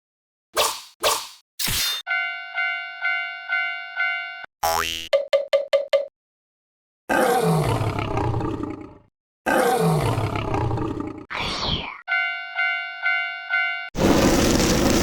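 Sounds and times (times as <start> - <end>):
bell-like chime: 2.1 - 4.5, 12.1 - 14.0
cartoon beast roar: 7.1 - 11.5.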